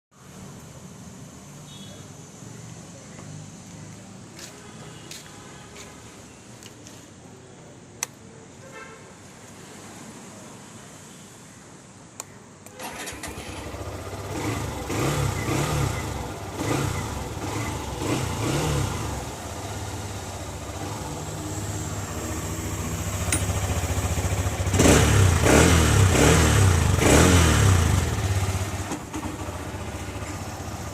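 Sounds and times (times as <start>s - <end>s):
motorcycle engine idling and revving: 12.8s - 30.9s.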